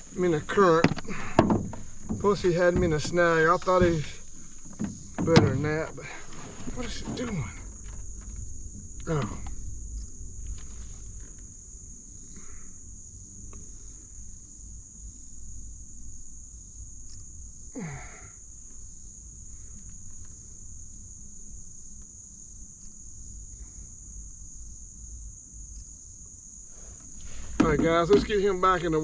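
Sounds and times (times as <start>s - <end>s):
low rumble: 0.0s - 17.5s
insects chirring: 0.0s - 29.0s.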